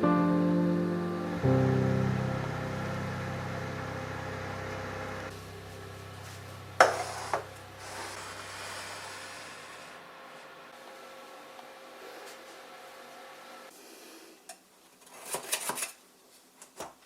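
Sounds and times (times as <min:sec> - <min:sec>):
piano chord: 0:00.0 - 0:08.2.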